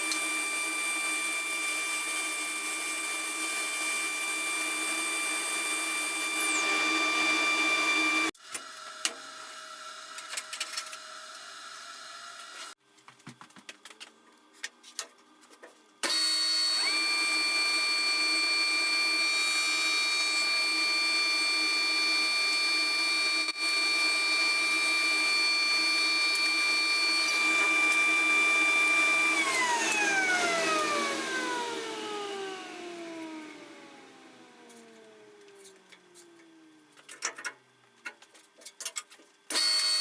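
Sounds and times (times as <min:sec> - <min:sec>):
electric motor whining: 0:00.0 - 0:08.3, 0:16.1 - 0:36.7.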